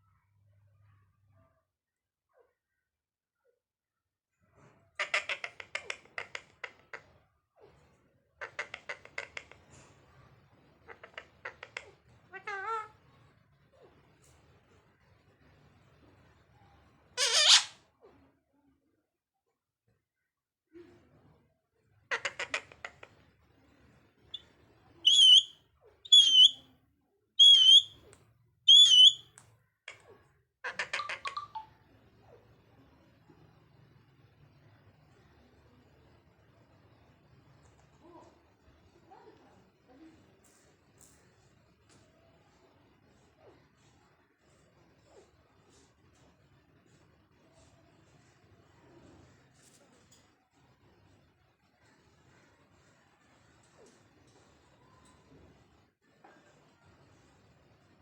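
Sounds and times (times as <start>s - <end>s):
parrot chirping calls: 17.2s - 17.7s, 25.0s - 25.5s, 26.1s - 26.6s, 27.4s - 28.0s, 28.7s - 29.2s.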